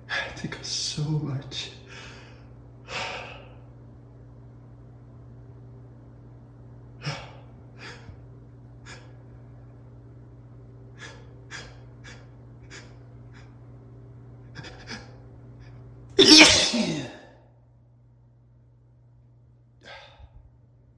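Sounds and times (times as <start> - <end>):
man sneezing: 16.2 - 17.2.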